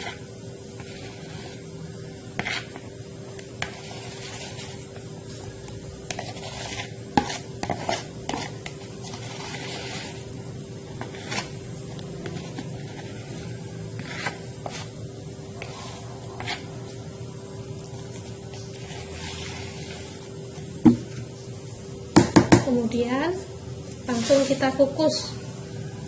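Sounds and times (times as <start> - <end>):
utensils scraping a bowl: 0.0 - 1.7, 3.6 - 4.9, 6.1 - 10.3, 10.9 - 11.6, 12.2 - 16.8, 18.5 - 20.2
steady hum: 0.0 - 26.0.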